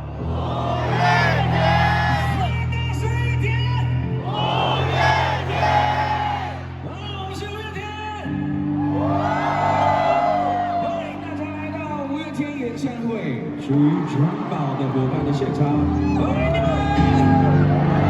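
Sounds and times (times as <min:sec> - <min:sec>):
audience cheering and screaming: 0:00.1 - 0:02.6, 0:04.3 - 0:06.8, 0:08.8 - 0:11.2, 0:14.1 - 0:18.0.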